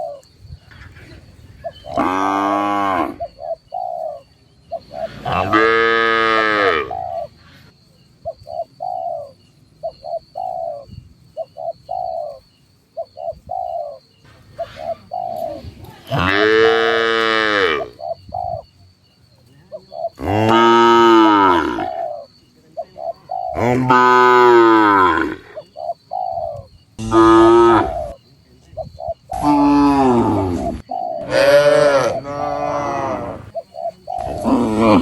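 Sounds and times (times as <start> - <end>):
doves cooing: 0.0 - 35.0
cattle mooing: 27.0 - 28.1, 31.2 - 33.5.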